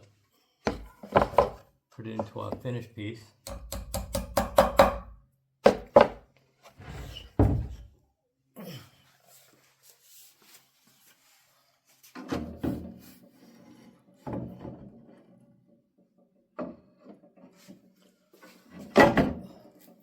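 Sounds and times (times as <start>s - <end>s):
wooden board knocks: 5.7s - 6.2s.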